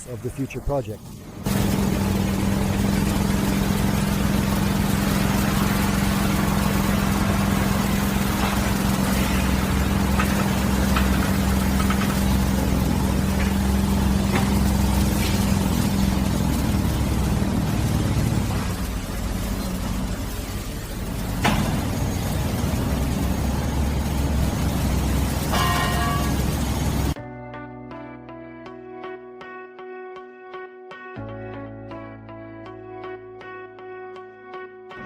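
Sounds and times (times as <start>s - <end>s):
diesel engine droning: 0.0s - 27.2s.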